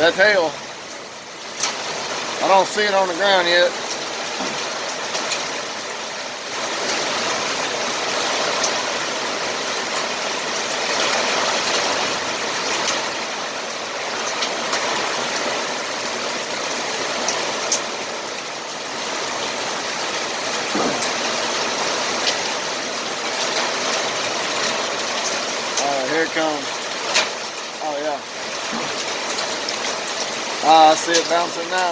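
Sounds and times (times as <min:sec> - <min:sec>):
hailstones pinging: 0:00.0 - 0:31.9
steady downpour: 0:00.0 - 0:31.9.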